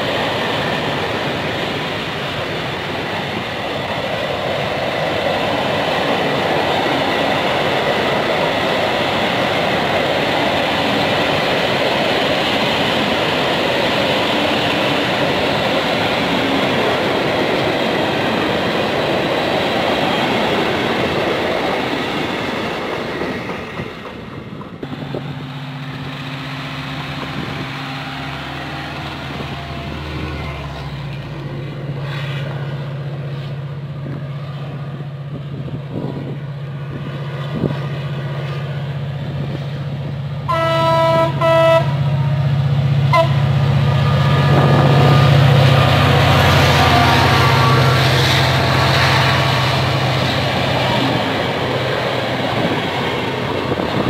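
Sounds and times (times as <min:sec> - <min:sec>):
diesel locomotive engine running: 0:00.0 - 0:54.0
train wheels rushing on rail: 0:00.0 - 0:54.0
train horn: 0:40.5 - 0:42.5, 0:43.1 - 0:43.5, 0:44.5 - 0:49.7.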